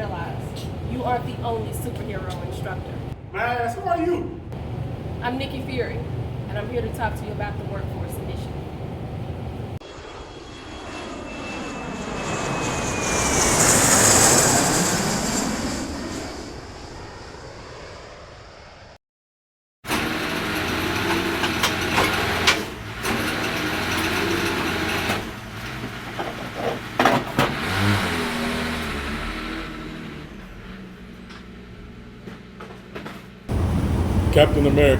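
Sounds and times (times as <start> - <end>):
aircraft passing overhead: 0.0 - 19.0, 33.2 - 34.9
engine running with knocks: 19.9 - 34.9.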